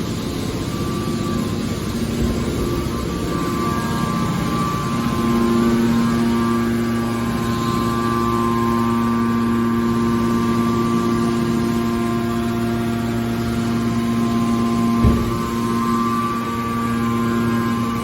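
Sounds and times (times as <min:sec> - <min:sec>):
hydraulic power unit humming: 0:00.0 - 0:18.0
low thump: 0:15.0 - 0:15.7.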